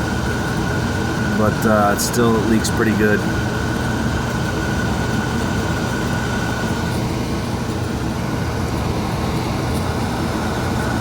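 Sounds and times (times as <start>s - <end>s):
furnace blower hum: 0.0s - 11.0s.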